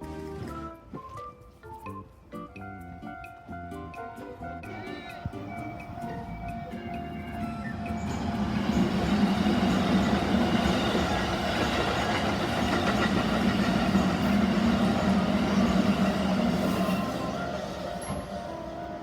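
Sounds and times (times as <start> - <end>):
train rumbling over crossing: 4.6 - 19.0
crossing warning bell: 4.7 - 19.0.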